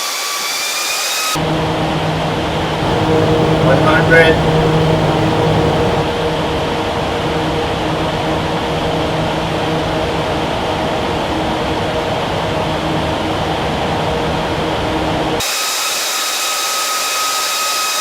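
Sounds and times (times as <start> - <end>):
large fans blowing air: 2.8 - 6.1
low fan hum: 2.8 - 6.1.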